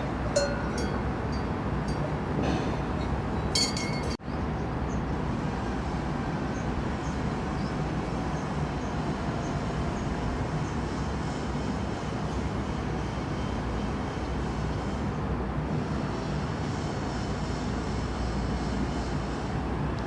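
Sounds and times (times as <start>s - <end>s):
steady outdoor rumble: 0.0s - 20.0s
metallic clinking: 0.3s - 2.0s, 3.6s - 4.2s.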